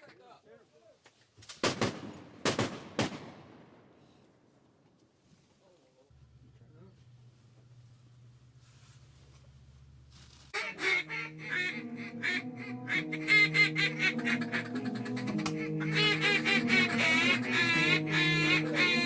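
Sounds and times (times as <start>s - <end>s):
honking waterfowl calls: 10.6s - 19.0s
music with sustained chords: 10.6s - 19.0s.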